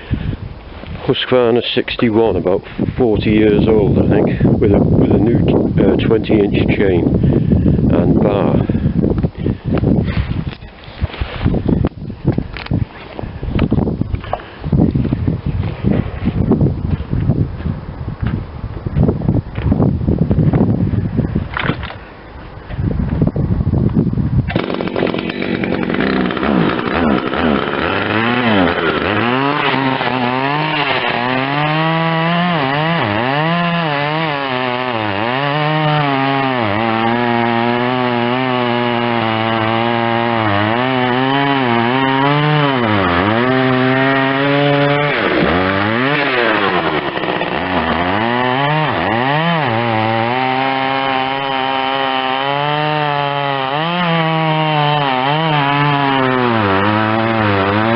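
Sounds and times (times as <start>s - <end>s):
chainsaw cutting wood: 24.5s - 57.9s.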